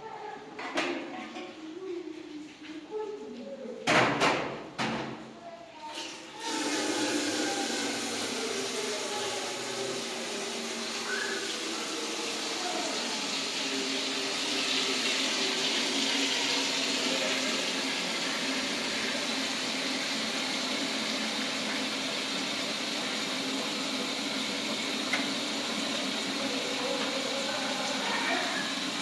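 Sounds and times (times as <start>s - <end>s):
rushing water: 6.4s - 29.0s.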